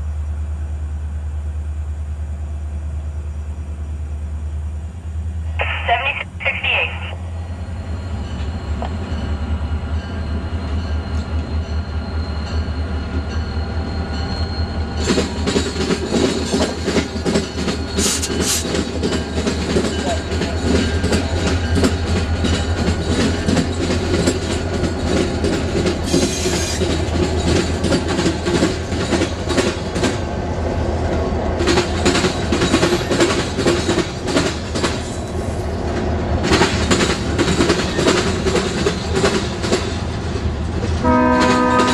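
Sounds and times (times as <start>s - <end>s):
locomotive engine drone: 0.0s - 41.9s
freight cars clickety-clack: 12.2s - 41.9s.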